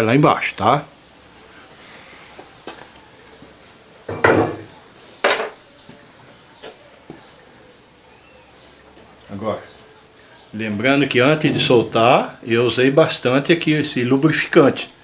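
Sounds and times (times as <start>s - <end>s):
metal tools clanking: 4.1s - 5.5s, 11.2s - 12.4s.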